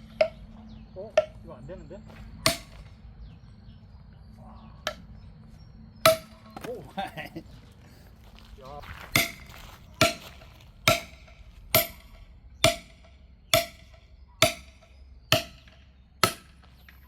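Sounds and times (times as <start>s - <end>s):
hammer striking steel wedge: 0.0s - 0.5s, 2.4s - 2.9s, 6.0s - 6.5s, 9.1s - 16.7s.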